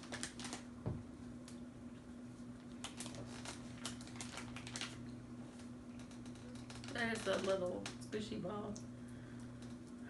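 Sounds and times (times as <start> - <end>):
plastic packaging crinkling: 0.0 - 0.8, 2.7 - 8.0
low electrical hum: 0.0 - 10.0.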